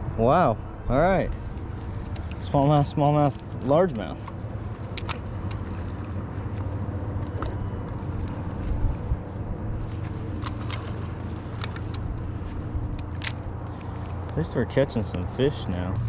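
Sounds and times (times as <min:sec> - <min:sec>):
boat motor humming: 0:00.0 - 0:16.0
light clicks and taps: 0:01.3 - 0:08.8.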